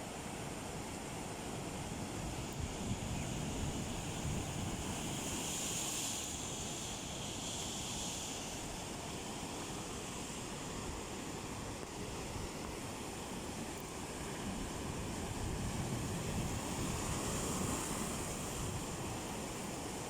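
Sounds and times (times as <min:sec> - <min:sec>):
sea waves washing in: 0:00.0 - 0:20.0
wind rumbling on microphone: 0:01.9 - 0:07.2, 0:14.0 - 0:20.0.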